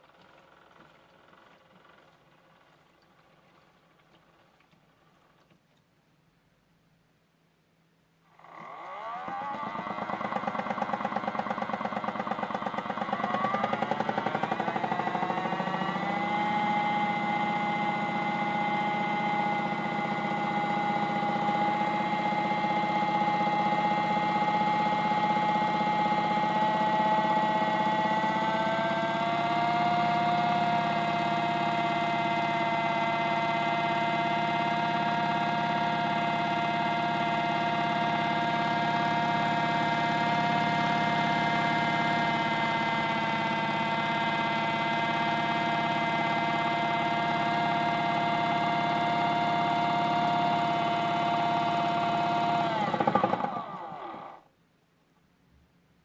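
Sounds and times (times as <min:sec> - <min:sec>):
toy washing machine motor whine: 0:08.4 - 0:54.5.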